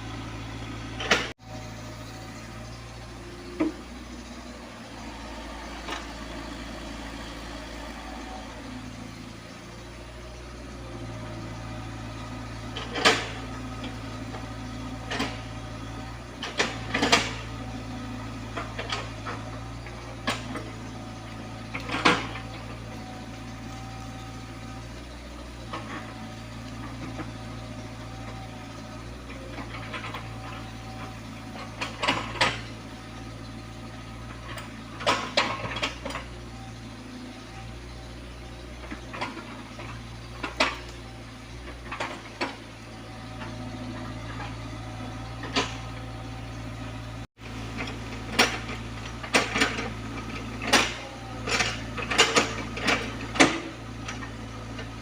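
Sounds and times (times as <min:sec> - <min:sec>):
excavator diesel engine running: 0:00.0 - 0:55.0
metallic clanks of excavator bucket: 0:47.8 - 0:54.9.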